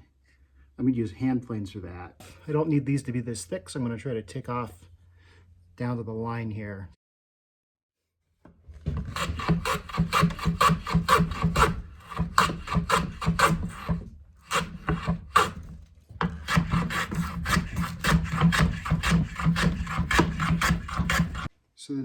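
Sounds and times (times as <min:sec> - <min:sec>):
hand plane scraping wood: 0:08.7 - 0:21.5.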